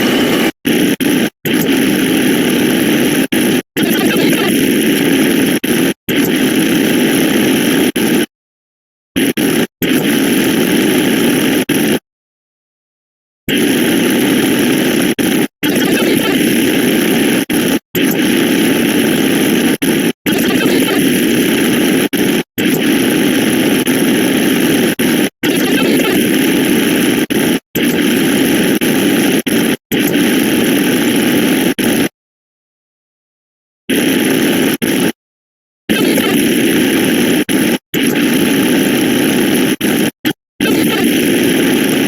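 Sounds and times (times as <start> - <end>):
harsh overlapping digital sound effects: 0.0 - 8.3, 13.5 - 32.1, 35.9 - 42.0.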